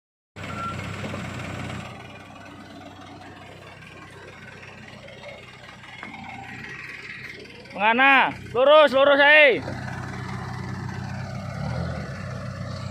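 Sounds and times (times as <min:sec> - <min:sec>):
diesel engine running: 0:00.4 - 0:12.9.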